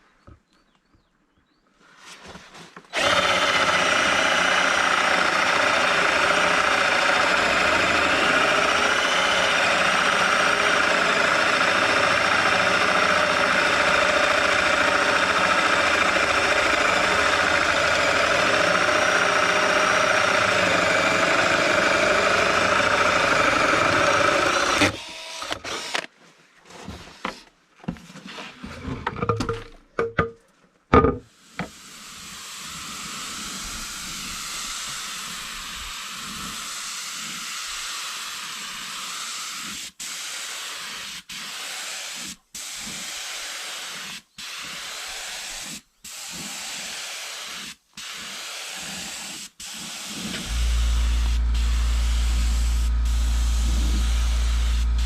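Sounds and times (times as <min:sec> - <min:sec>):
power tool motor running: 0:02.9 - 0:26.1, 0:50.2 - 0:55.0.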